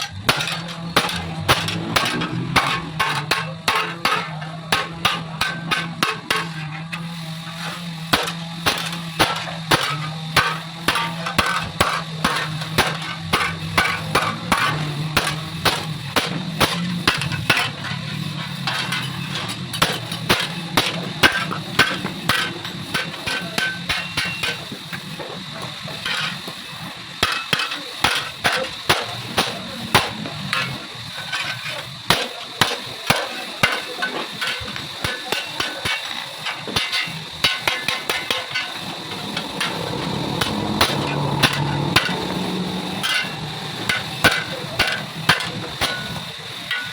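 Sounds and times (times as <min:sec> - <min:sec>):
hammer striking metal: 0:00.0 - 0:06.7, 0:07.7 - 0:17.7, 0:35.6 - 0:46.9
steady low hum: 0:00.0 - 0:23.6, 0:36.4 - 0:46.6.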